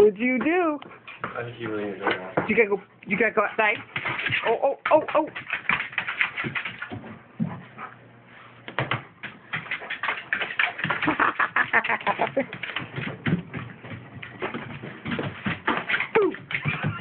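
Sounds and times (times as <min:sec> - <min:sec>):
claws clicking on hard floor: 0:03.7 - 0:07.2, 0:08.7 - 0:17.0.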